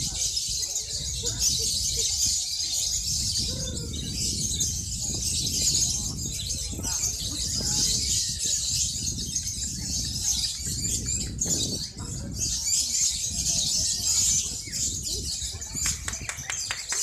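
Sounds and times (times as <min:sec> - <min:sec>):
lovebirds trilling: 0:00.0 - 0:17.0.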